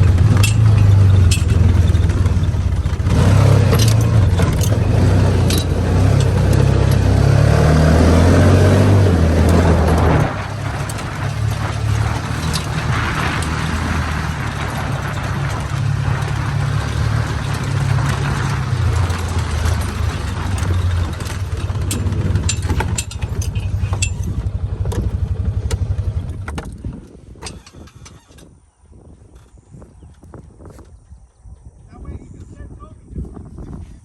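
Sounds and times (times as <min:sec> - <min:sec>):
rattling clicks: 0:00.0 - 0:07.2, 0:08.6 - 0:28.5
vehicle engine running: 0:00.0 - 0:27.2.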